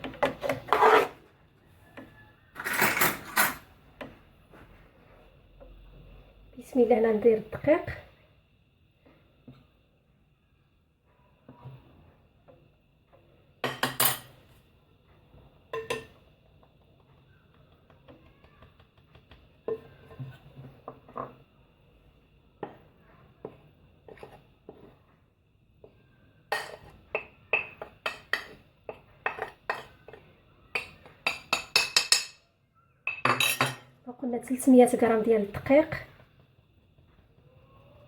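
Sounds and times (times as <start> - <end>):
utensils clinking against bowl: 2.6 - 3.7, 26.5 - 32.4, 33.1 - 34.0.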